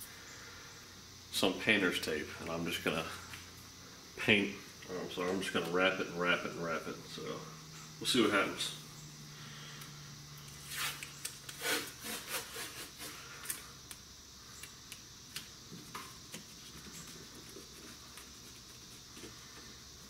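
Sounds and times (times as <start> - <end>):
tape pulled off roll: 10.6 - 13.6.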